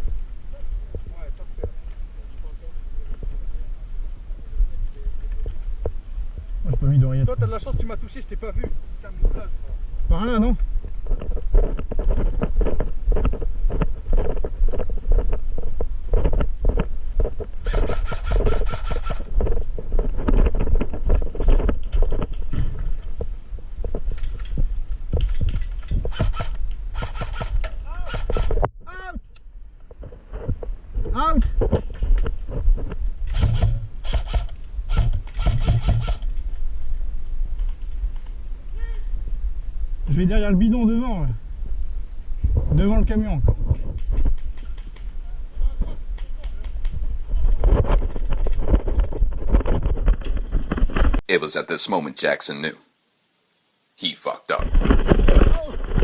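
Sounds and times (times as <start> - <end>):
steady low rumble: 0.0 - 11.1
wind rumble on microphone: 0.0 - 51.2, 54.6 - 56.0
rustling and scraping: 10.6 - 28.7, 29.8 - 38.8, 43.4 - 51.2, 54.6 - 56.0
airsoft rifle automatic burst: 17.6 - 19.3, 26.1 - 28.5, 33.3 - 36.3
footsteps and gear knocking: 31.6 - 36.4.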